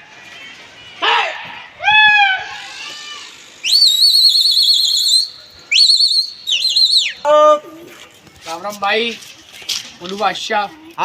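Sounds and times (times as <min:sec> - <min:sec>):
man shouting: 0:01.0 - 0:02.5
shrill trilling whistle: 0:03.6 - 0:07.4.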